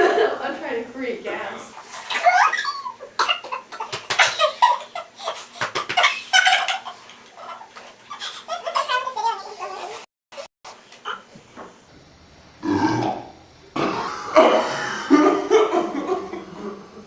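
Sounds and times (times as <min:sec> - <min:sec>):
girls laughing and giggling: 0:14.2 - 0:17.0.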